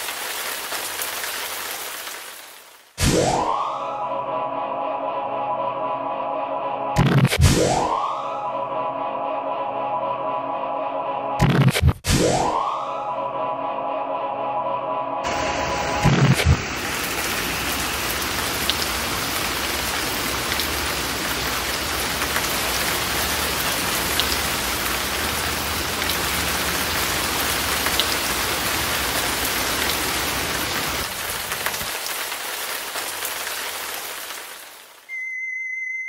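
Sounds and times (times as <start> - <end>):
steady rain hiss: 0.0 - 3.0, 15.3 - 35.1.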